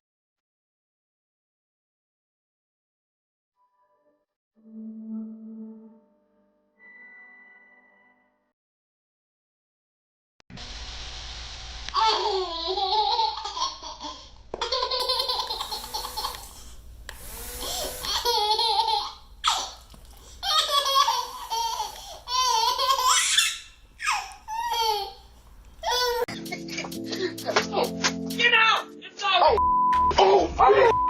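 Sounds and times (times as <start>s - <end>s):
high-pitched laughter: 14.6s - 16.5s, 17.8s - 19.7s.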